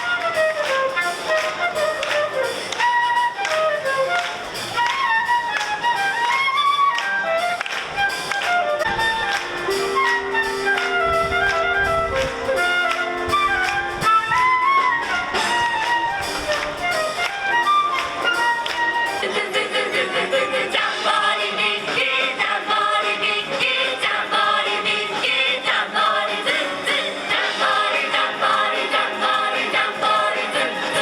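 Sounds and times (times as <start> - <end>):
brass band playing: 0.0 - 23.6
steady drum beats: 0.0 - 31.0.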